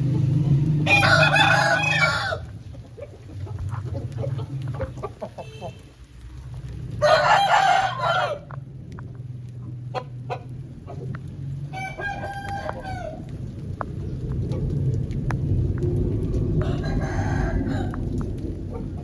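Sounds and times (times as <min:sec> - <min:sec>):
chickens clucking: 0:00.0 - 0:06.0, 0:08.2 - 0:14.7, 0:17.6 - 0:19.0
rooster crowing: 0:00.8 - 0:02.6, 0:07.0 - 0:08.5, 0:11.7 - 0:13.2, 0:16.6 - 0:18.1.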